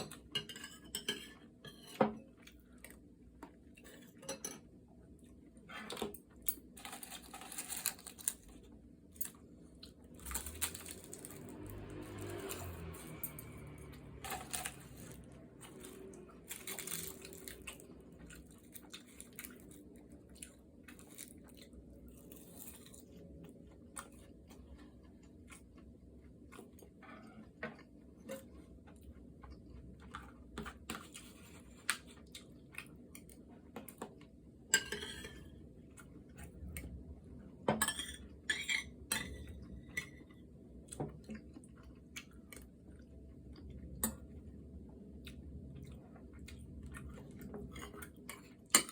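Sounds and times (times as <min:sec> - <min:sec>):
cutlery clinking against dishes: 0:00.0 - 0:02.2, 0:34.8 - 0:35.5.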